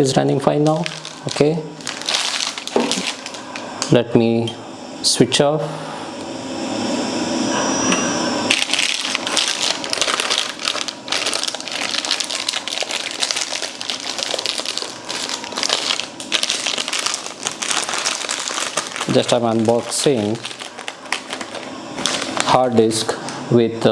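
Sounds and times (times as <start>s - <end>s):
plastic packaging crinkling: 0.4s - 4.0s, 8.5s - 23.4s.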